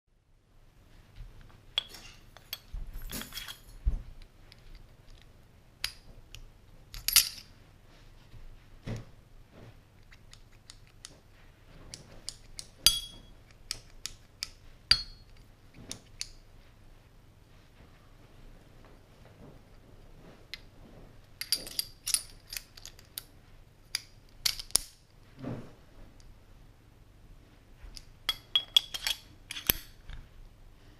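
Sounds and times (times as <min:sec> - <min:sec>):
metallic clicks and clinks: 0:01.8 - 0:03.8, 0:21.4 - 0:23.3, 0:28.0 - 0:30.2.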